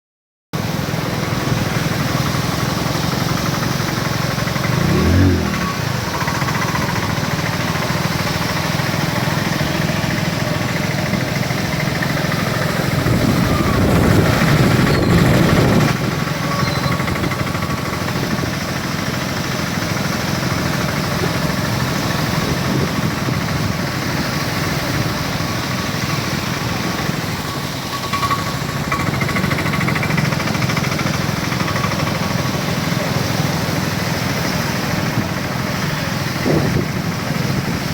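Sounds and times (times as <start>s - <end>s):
car engine and road noise: 0.6s - 37.9s
short rising and falling tone: 4.7s - 6.6s.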